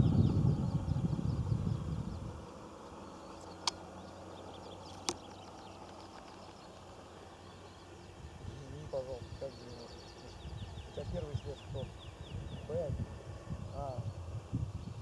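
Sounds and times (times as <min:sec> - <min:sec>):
low rumble: 0:00.0 - 0:02.4
field insects chirping: 0:00.0 - 0:15.0
sharp clicks: 0:04.9 - 0:06.5.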